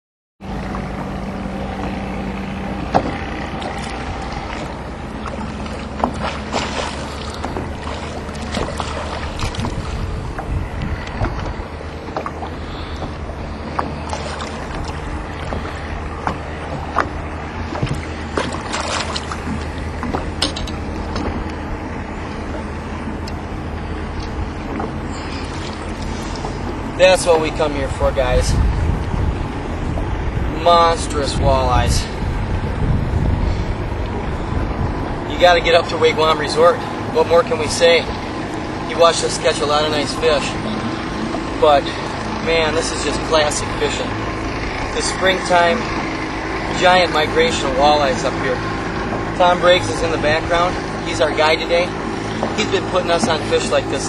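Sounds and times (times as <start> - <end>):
boat motor running: 0.4 - 54.0
wind on microphone: 0.5 - 35.7
short knocks: 2.8 - 3.9.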